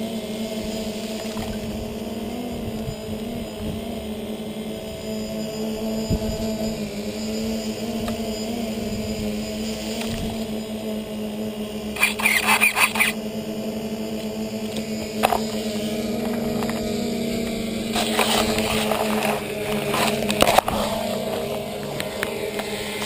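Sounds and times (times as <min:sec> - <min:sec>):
toy car electric motor whining: 0:00.0 - 0:23.0
scraping and rustling through leaves: 0:17.8 - 0:22.2.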